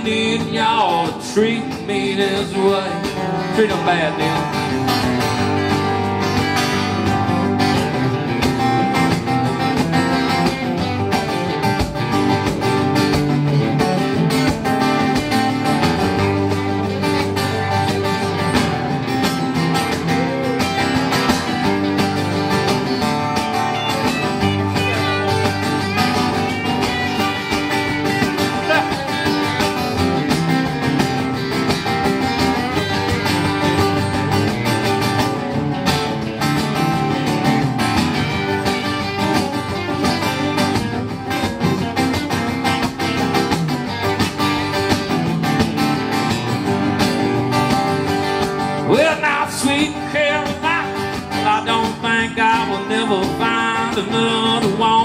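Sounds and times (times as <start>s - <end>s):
country guitars playing: 0.0s - 55.0s.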